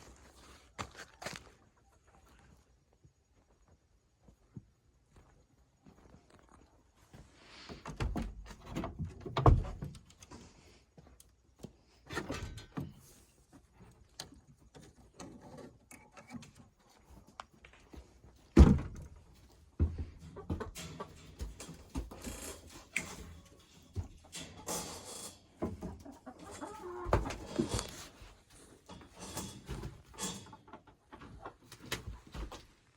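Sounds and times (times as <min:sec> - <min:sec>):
thumps and knocks: 0:07.9 - 0:10.1, 0:18.5 - 0:19.2
scuffling: 0:26.0 - 0:30.1.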